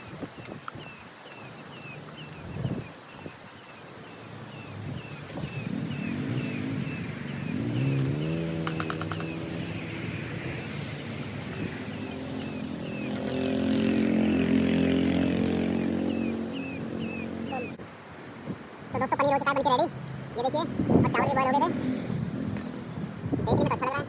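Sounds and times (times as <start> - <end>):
vehicle engine running: 11.1 - 17.8
high repeating chirp: 16.0 - 17.8.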